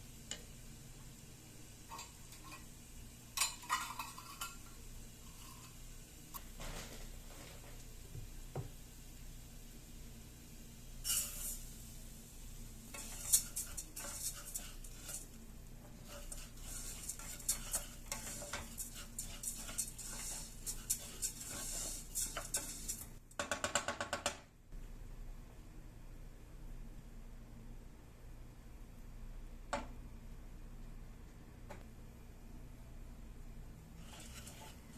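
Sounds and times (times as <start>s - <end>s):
faint hiss: 0.0s - 23.3s
utensils scraping cookware: 3.4s - 4.6s, 11.0s - 11.6s, 12.9s - 23.2s, 34.0s - 34.9s.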